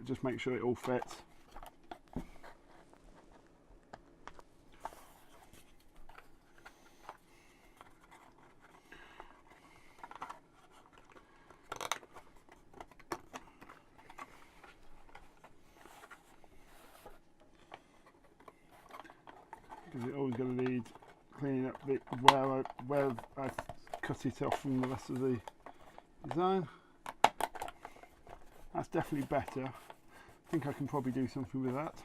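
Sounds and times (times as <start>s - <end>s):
faint scratching and scraping: 0.0s - 3.6s, 4.4s - 26.9s, 27.5s - 32.0s.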